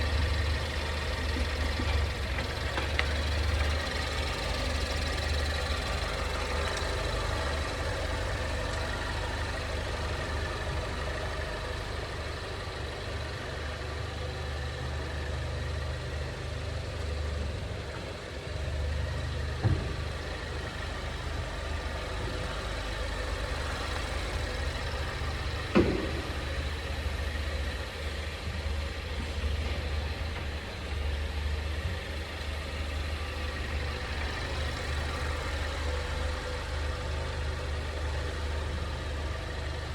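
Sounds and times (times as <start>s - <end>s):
car running noise: 0.0s - 39.9s
knocks from car underbody: 19.6s - 20.8s, 25.6s - 26.9s.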